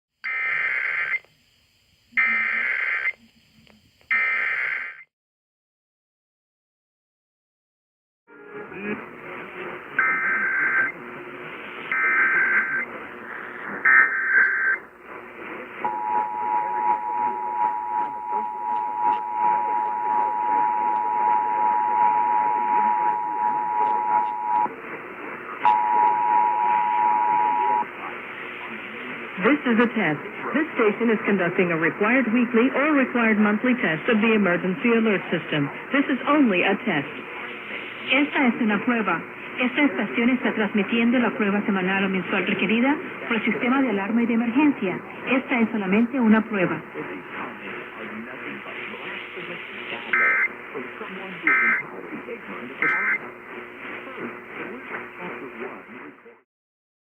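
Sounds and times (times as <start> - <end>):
radio hiss: 2.0 - 5.0, 8.7 - 56.4
digital data tone bursts: 50.1 - 50.5, 52.8 - 53.2.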